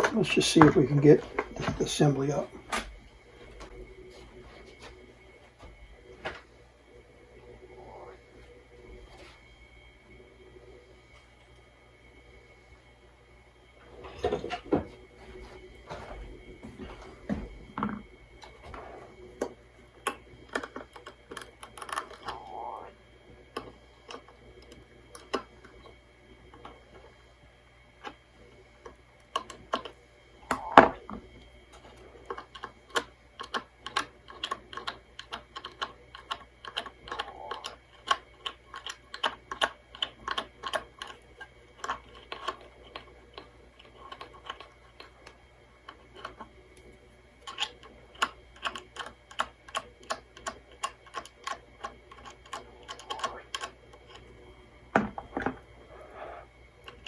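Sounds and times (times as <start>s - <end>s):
screwdriver clicking on radio screws: 32.3s - 46.5s, 47.4s - 54.3s.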